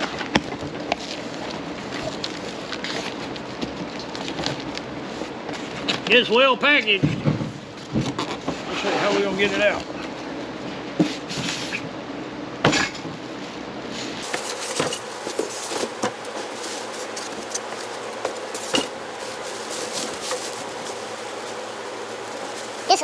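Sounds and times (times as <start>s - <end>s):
cardboard box rustling and scraping: 13.9s - 23.0s.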